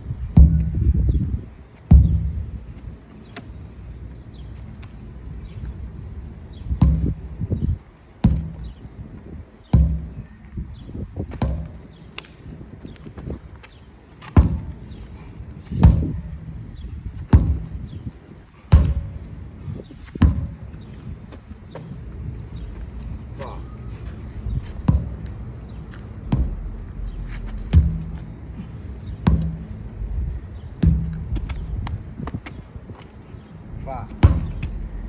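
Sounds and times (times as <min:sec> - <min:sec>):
sledgehammer striking a tire: 0:00.3 - 0:01.1, 0:01.9 - 0:02.5, 0:06.7 - 0:07.4, 0:08.2 - 0:08.8, 0:09.7 - 0:10.2, 0:11.3 - 0:11.9, 0:14.3 - 0:14.9, 0:15.7 - 0:16.5, 0:17.1 - 0:18.0, 0:18.7 - 0:19.3, 0:20.2 - 0:20.6, 0:24.8 - 0:25.3, 0:26.3 - 0:28.3, 0:29.0 - 0:29.9, 0:30.8 - 0:32.0, 0:33.9 - 0:34.8.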